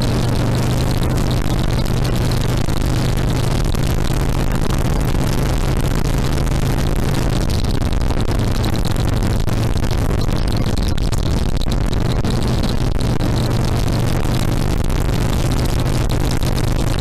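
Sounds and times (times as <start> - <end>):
motorcycle engine running: 0.0 - 17.0.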